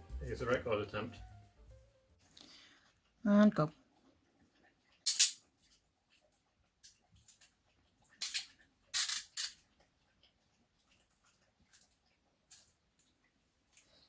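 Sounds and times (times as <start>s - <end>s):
metallic clicks of handcuffs: 5.1s - 5.4s.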